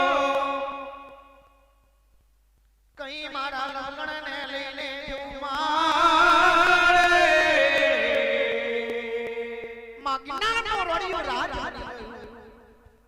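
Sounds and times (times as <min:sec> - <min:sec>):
person singing folk song: 0:00.0 - 0:01.4, 0:03.0 - 0:13.0
faint percussion ticks: 0:01.0 - 0:02.9.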